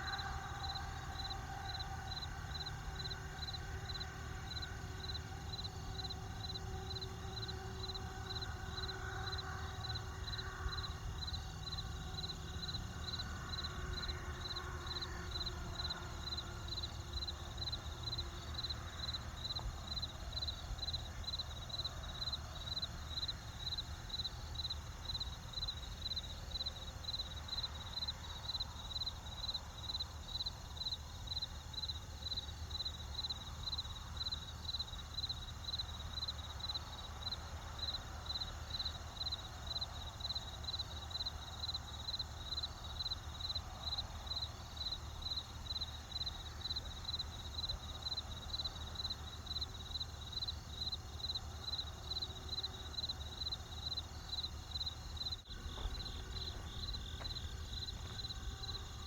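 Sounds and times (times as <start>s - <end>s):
crickets chirping: 0.0s - 59.0s
low steady rumble: 54.9s - 59.0s.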